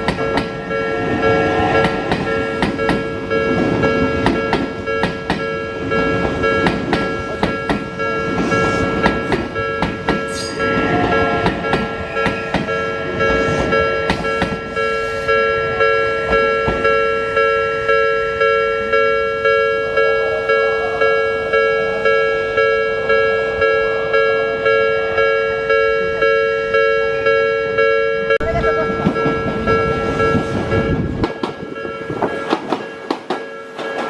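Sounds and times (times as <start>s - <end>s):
train wheels clicking over rail joints: 0.0s - 0.7s, 1.8s - 15.3s, 28.9s - 34.0s
level crossing alarm two-tone clang: 0.0s - 34.0s.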